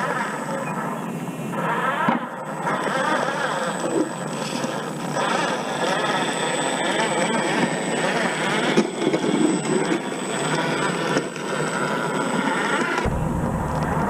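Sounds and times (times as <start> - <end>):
rc truck motor running: 0.0 - 14.0.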